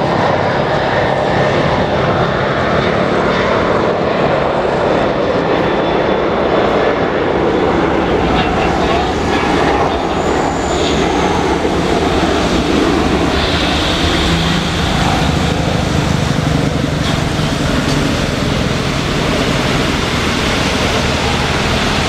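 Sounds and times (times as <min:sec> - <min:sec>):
faint jet engine whine: 0:00.0 - 0:22.0
heavy rain rushing: 0:07.6 - 0:22.0.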